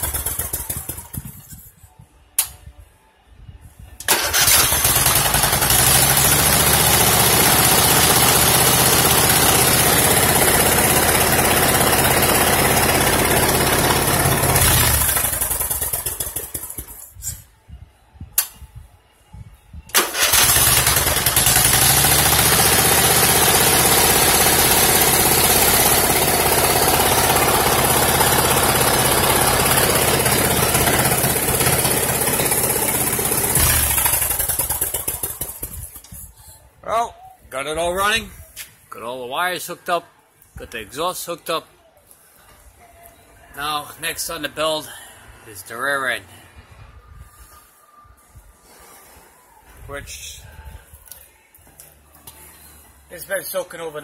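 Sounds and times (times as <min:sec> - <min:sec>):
engine running and restarting: 0:00.0 - 0:01.5, 0:04.0 - 0:17.2, 0:19.9 - 0:36.0.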